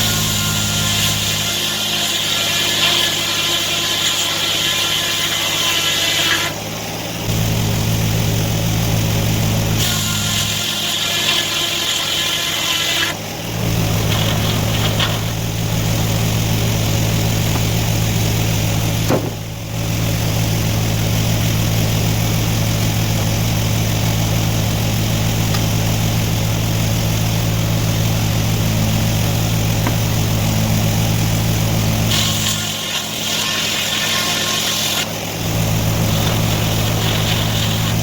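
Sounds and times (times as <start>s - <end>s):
high-pitched whine: 6.5s - 10.0s, 35.2s - 38.0s
engine running steadily: 6.5s - 10.6s, 13.1s - 32.8s, 35.0s - 38.0s.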